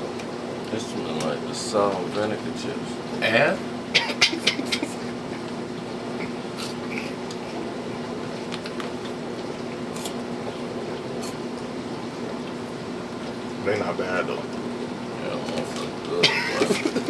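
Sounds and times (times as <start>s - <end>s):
chips being chewed: 6.2s - 7.6s, 8.3s - 11.7s.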